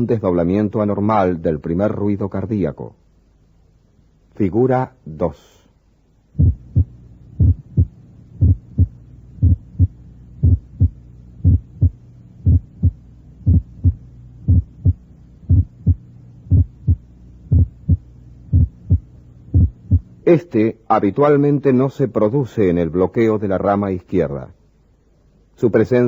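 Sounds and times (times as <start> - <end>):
low recording hum: 0.0 - 26.0
heartbeat: 6.4 - 20.2.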